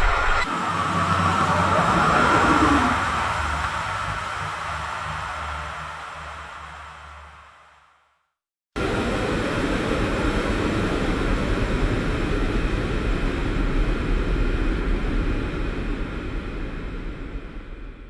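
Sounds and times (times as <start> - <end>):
traffic rumble: 0.0 - 5.7.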